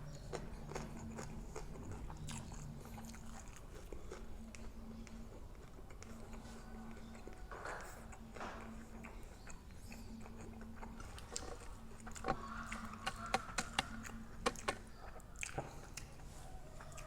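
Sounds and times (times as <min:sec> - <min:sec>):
faint steady hum: 0:00.0 - 0:17.0
person chewing: 0:00.0 - 0:17.0
sharp crunching clicks: 0:10.8 - 0:14.9.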